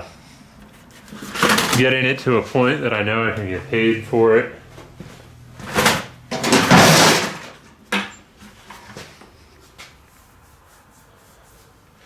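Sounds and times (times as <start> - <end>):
hard drives rattling from bucket: 0.9 - 2.4, 5.5 - 8.7.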